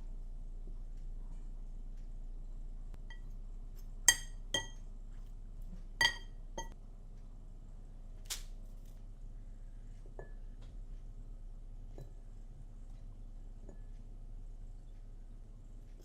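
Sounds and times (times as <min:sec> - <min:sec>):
kitchenware clinking: 0:04.1 - 0:04.8, 0:06.0 - 0:06.7.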